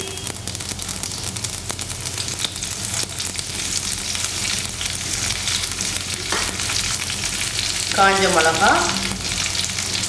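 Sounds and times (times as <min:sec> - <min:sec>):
sharp crackles and pops: 0:00.0 - 0:08.0
spices sizzling in hot oil: 0:00.0 - 0:10.0.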